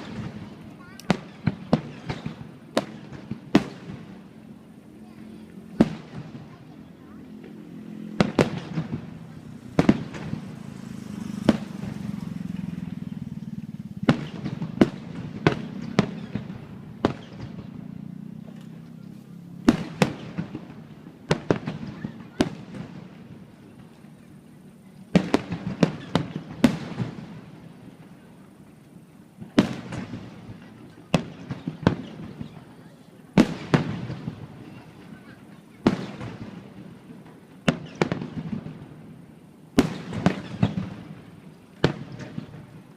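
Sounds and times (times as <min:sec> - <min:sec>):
fireworks bangs and crackles: 0:00.0 - 0:42.9.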